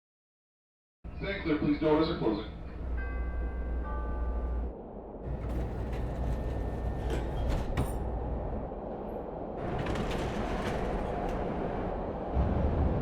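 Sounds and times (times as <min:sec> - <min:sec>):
rush of rail noise: 0:01.1 - 0:13.0
train rumble: 0:01.1 - 0:13.0
sliding doors clicking shut: 0:05.3 - 0:08.2, 0:09.6 - 0:11.9.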